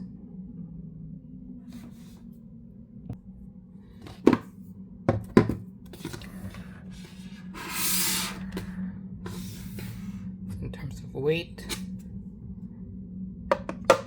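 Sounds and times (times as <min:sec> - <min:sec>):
low steady hum: 0:00.0 - 0:14.0
objects knocking on hard surface: 0:04.0 - 0:04.5, 0:05.1 - 0:05.6, 0:13.5 - 0:14.0.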